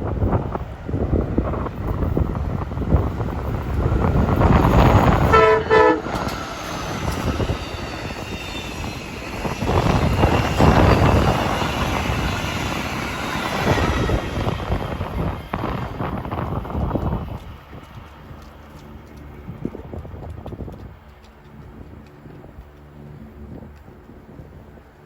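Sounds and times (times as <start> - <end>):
train passing on rails: 0.0 - 25.0
train horn blasts: 5.1 - 6.3.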